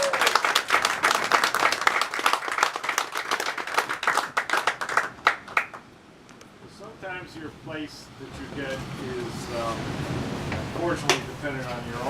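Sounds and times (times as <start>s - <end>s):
audience applauding: 0.0s - 5.8s.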